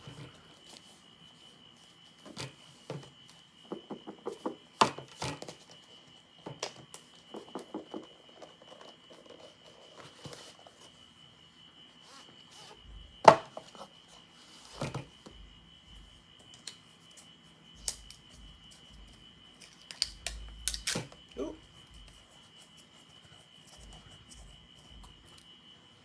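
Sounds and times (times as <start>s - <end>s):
faint high whine: 0.0s - 26.0s
packaging clicks and crinkles: 19.6s - 21.2s.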